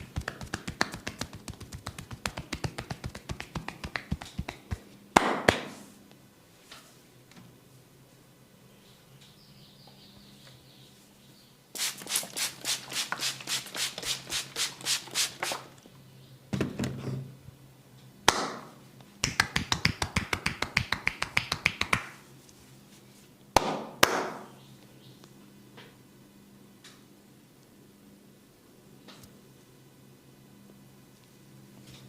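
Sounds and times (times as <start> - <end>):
hands slapping body: 0.0 - 5.8, 18.3 - 22.2.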